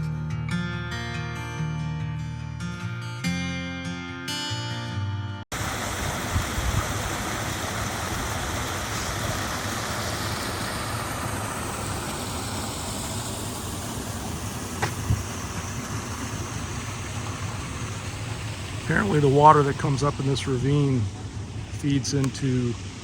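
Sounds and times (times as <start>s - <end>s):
water rushing: 5.5s - 23.0s.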